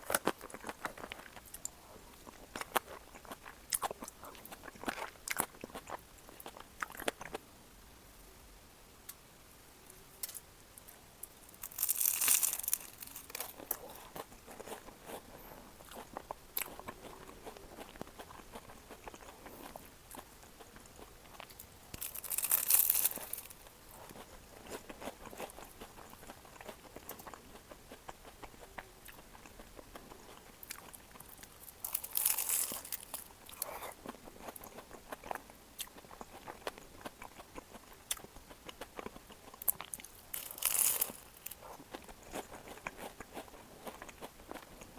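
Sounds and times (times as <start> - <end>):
crunchy chewing: 0.0 - 7.4, 10.2 - 44.9
crackly bites of pastry: 11.5 - 44.9.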